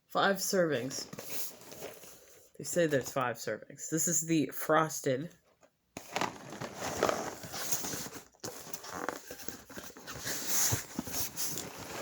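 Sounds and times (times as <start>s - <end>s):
cardboard boxes rustling and scraping: 0.8s - 3.0s, 6.0s - 12.0s.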